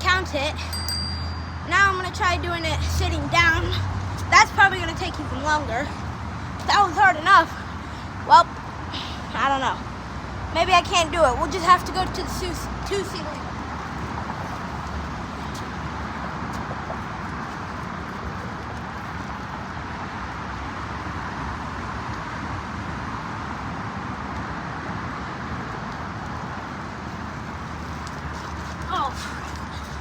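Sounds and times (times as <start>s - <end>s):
outdoor background hiss: 0.0s - 16.8s.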